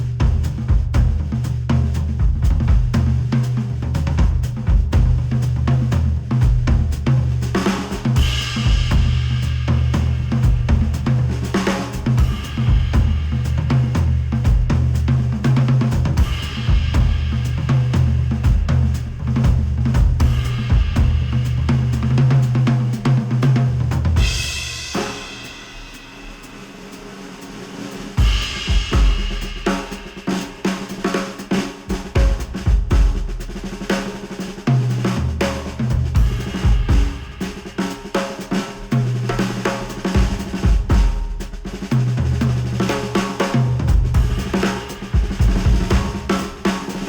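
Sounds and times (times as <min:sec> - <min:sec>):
drum kit playing: 0:00.0 - 0:47.0
heavy bass line: 0:08.1 - 0:24.8, 0:43.7 - 0:47.0.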